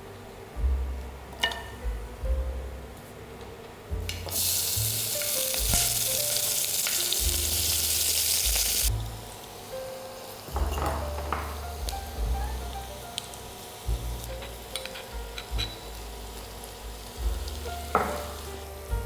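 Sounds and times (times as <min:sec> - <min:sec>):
food sizzling in hot oil: 0:04.2 - 0:19.0.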